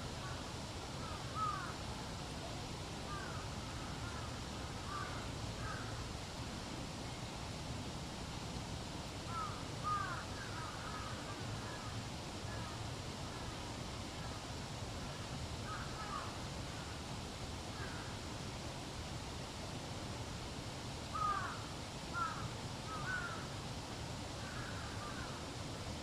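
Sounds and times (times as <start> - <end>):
low background noise: 0.0 - 26.0
crows calling: 1.0 - 1.8, 3.1 - 6.0, 9.3 - 11.9, 15.1 - 16.9, 17.8 - 18.1, 21.1 - 23.4, 24.4 - 25.3.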